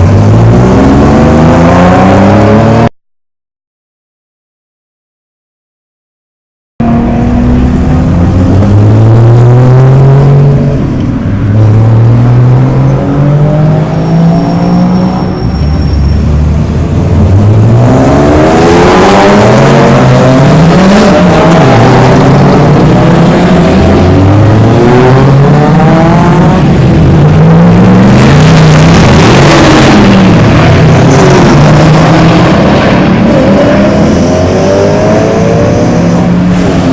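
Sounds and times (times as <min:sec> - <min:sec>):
race car engines accelerating: 0:00.0 - 0:02.9, 0:06.8 - 0:36.9.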